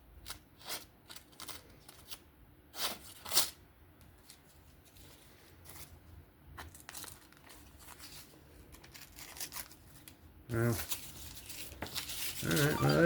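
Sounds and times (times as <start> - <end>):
paper rustling and tearing: 6.6 - 13.0.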